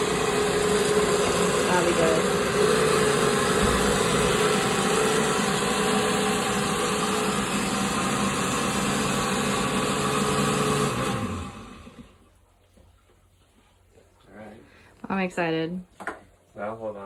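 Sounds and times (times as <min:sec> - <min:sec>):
blender motor running: 0:00.0 - 0:12.2.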